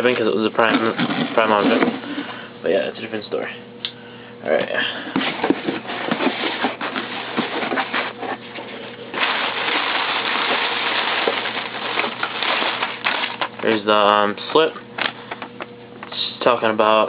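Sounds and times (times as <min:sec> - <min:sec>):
paper and plastic crinkling: 0:09.2 - 0:13.8.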